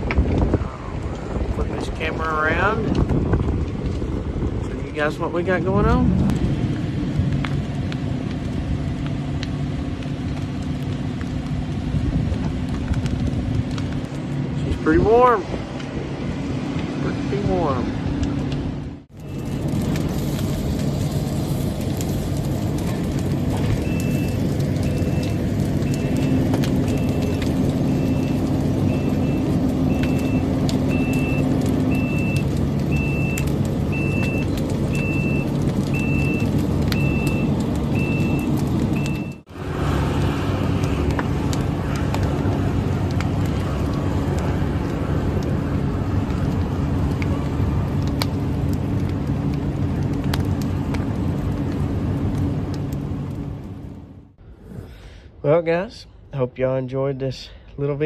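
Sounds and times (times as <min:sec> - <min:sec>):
diesel engine running: 0:00.3 - 0:55.2.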